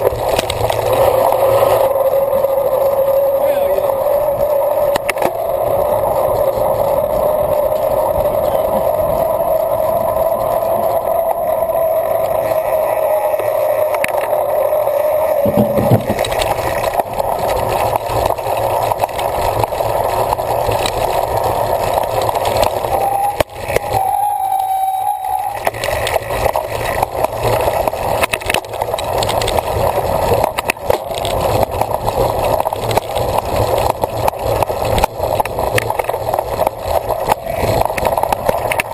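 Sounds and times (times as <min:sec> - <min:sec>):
bike rattling over bumps: 0:00.0 - 0:38.9.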